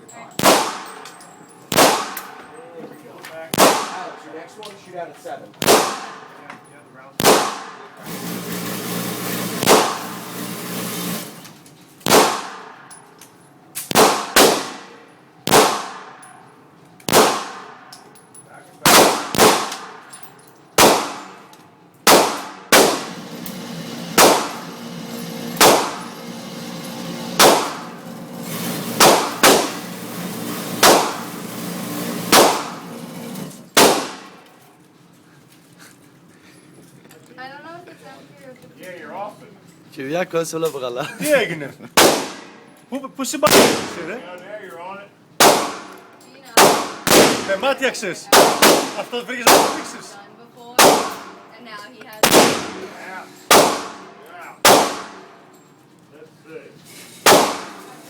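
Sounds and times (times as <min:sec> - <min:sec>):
pistol shots echoing: 0:00.4 - 0:01.0, 0:01.7 - 0:02.4, 0:03.5 - 0:04.2, 0:05.6 - 0:06.3, 0:07.2 - 0:07.9, 0:12.1 - 0:12.8, 0:13.9 - 0:16.2, 0:17.1 - 0:17.8, 0:18.9 - 0:20.1, 0:20.8 - 0:21.4, 0:22.1 - 0:23.1, 0:24.2 - 0:24.7, 0:25.6 - 0:26.0, 0:27.4 - 0:28.0, 0:29.0 - 0:29.9, 0:30.6 - 0:31.4, 0:32.2 - 0:32.8, 0:33.8 - 0:34.4, 0:43.5 - 0:44.0, 0:45.4 - 0:46.0, 0:46.6 - 0:47.7, 0:48.3 - 0:50.0, 0:50.8 - 0:51.4, 0:52.2 - 0:52.9, 0:53.5 - 0:55.3, 0:57.3 - 0:57.9.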